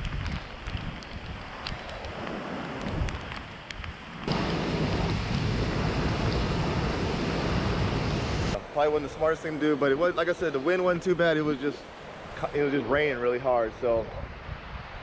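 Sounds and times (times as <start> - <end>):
wind on microphone: 0.0 - 8.6, 13.9 - 15.0
heavy rain hiss: 4.2 - 14.1.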